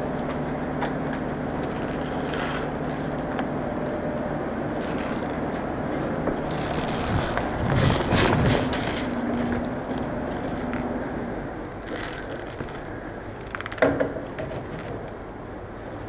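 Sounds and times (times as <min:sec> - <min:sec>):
crunching footsteps on rough ground: 0:00.0 - 0:04.1, 0:04.8 - 0:11.2, 0:11.8 - 0:13.8.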